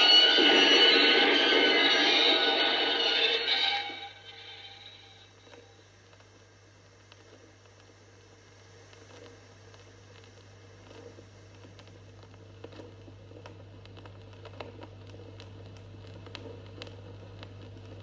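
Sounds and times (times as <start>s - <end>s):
low hum: 0.0s - 5.7s
vinyl hiss: 0.0s - 18.0s
vinyl crackle clicks: 5.5s - 18.0s.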